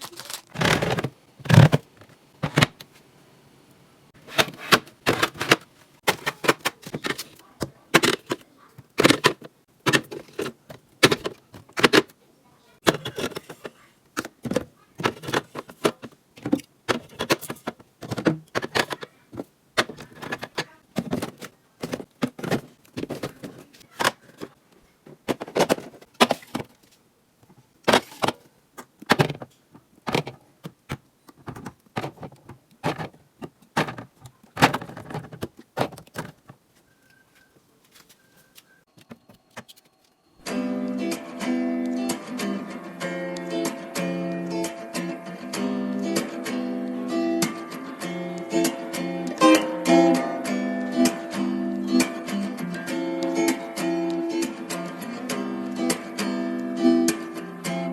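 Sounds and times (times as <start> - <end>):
plastic containers clattering: 0.0 - 2.9, 4.2 - 12.2, 12.8 - 39.9.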